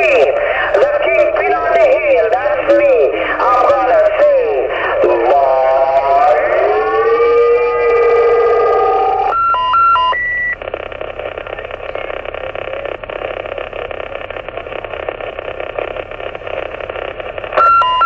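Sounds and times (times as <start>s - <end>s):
radio static hiss: 0.0s - 18.0s
warbling radio transmission: 0.0s - 18.0s
multi-tone roger beep: 7.8s - 10.6s, 17.6s - 18.0s.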